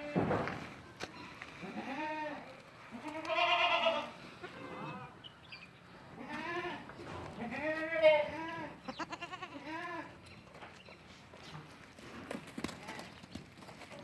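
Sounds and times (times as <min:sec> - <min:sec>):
goats bleating: 0:01.6 - 0:05.2, 0:06.2 - 0:10.2.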